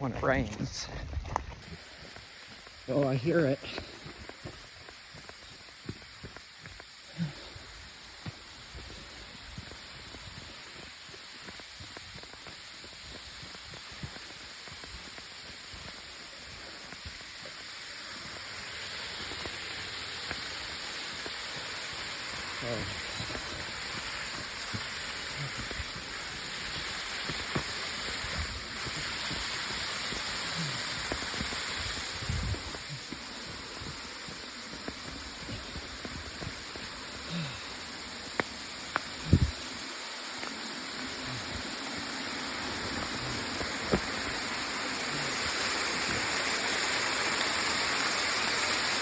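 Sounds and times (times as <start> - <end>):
rain falling: 1.4 - 49.0
waterfall rushing: 1.6 - 49.0.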